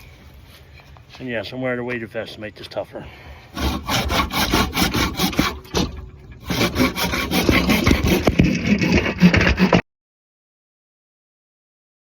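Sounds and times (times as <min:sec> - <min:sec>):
handsaw cutting wood: 0:03.5 - 0:09.9.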